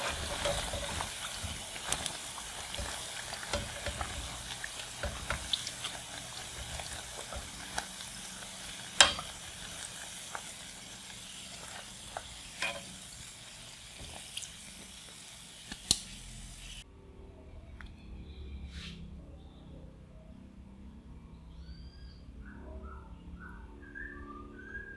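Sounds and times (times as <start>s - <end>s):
food sizzling in oil: 0.0s - 16.8s.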